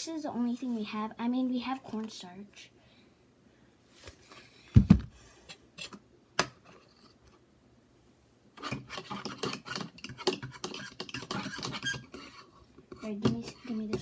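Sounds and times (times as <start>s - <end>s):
dull thump on table: 4.8s - 5.1s.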